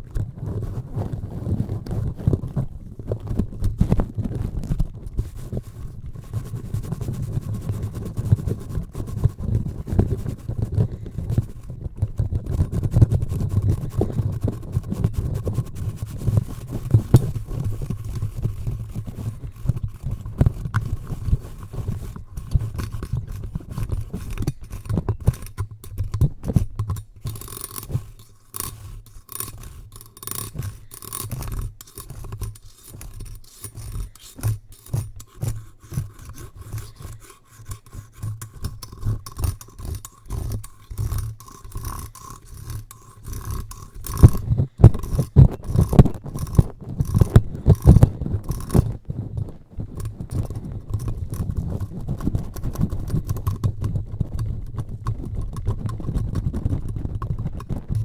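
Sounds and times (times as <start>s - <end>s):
scraping on microphone: 0.0s - 58.0s
irregular clicks: 22.4s - 48.9s.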